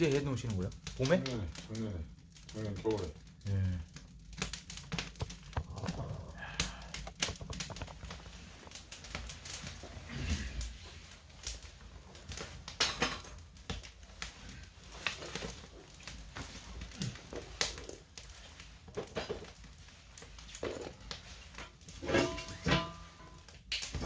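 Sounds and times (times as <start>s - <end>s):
sharp clicks and knocks: 6.6s - 8.8s.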